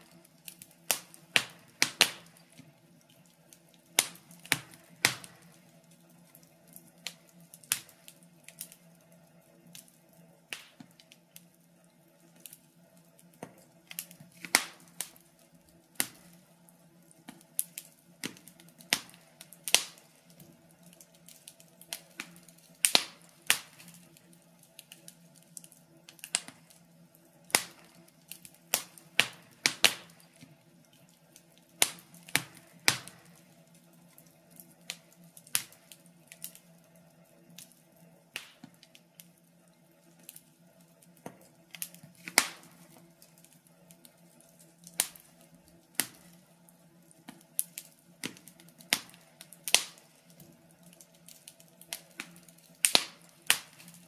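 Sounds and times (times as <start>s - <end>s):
faint steady hum: 0.0s - 54.0s
wood fire crackling: 0.0s - 54.0s.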